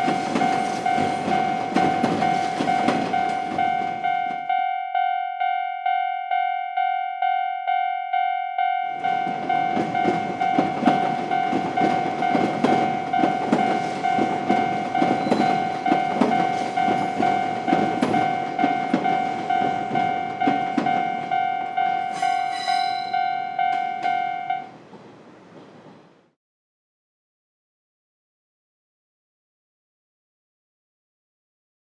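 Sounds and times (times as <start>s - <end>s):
train wheels clattering on rails: 0.0s - 4.6s, 8.8s - 26.3s
railroad crossing bell ringing: 0.0s - 24.8s.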